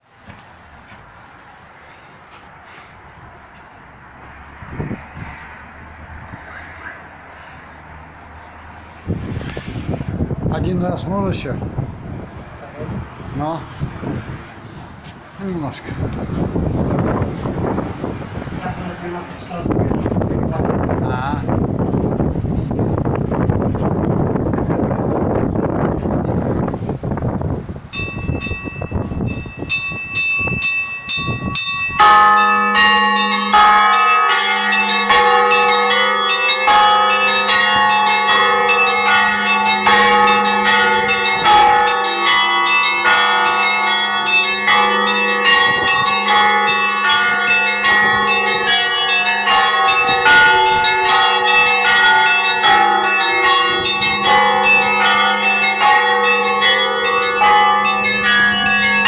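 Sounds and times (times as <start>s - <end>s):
deep bell humming: 28.0s - 59.0s
small bells striking quickly: 28.0s - 59.0s.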